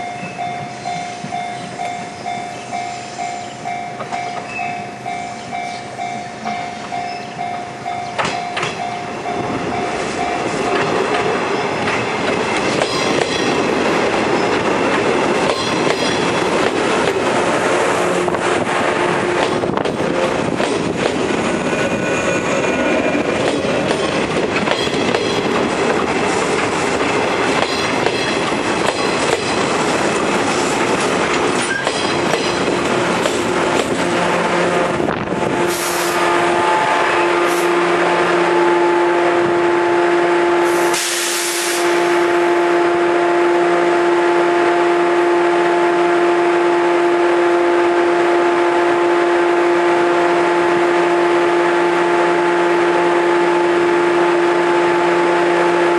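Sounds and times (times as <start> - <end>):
train wheels clattering on rails: 0.0 - 34.4
short hisses: 40.8 - 42.1.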